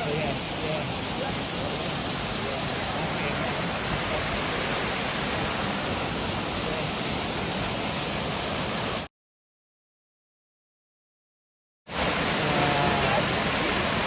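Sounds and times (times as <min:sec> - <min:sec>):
waterfall rushing: 0:00.0 - 0:09.1, 0:11.9 - 0:14.0.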